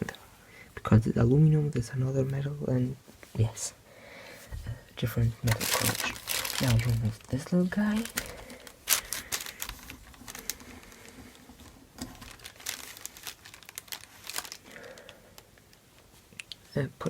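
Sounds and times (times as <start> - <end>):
rustling: 4.3 - 16.8.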